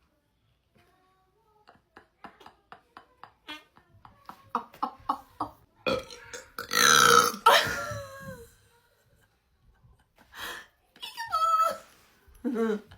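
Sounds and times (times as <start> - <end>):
person belching: 5.9 - 7.6.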